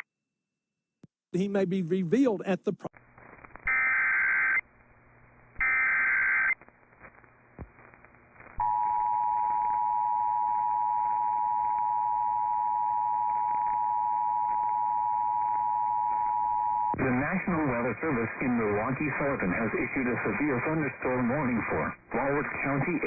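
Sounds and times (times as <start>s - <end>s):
digital data burst: 5.6s - 6.6s.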